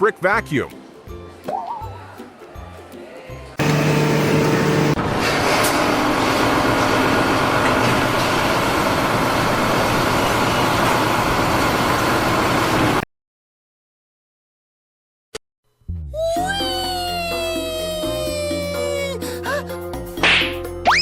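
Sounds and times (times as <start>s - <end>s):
heavy engine running: 3.6s - 13.0s.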